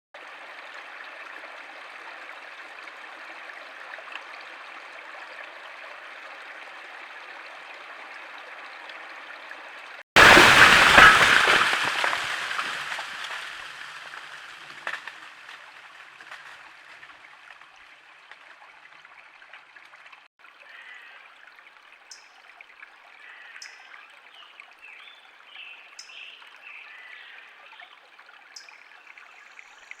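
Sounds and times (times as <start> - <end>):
large tree falling crash: 10.2 - 15.2.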